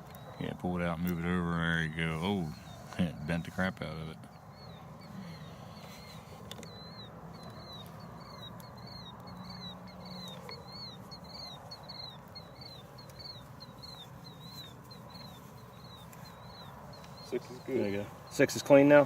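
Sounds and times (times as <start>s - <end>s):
small animal chirping: 4.2s - 18.5s.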